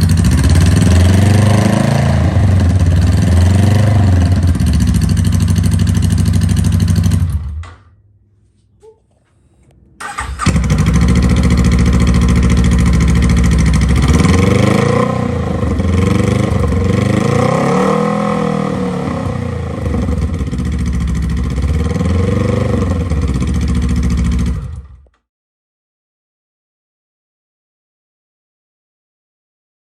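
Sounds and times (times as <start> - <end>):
motorcycle engine idling and revving: 0.0 - 7.6, 10.0 - 25.2.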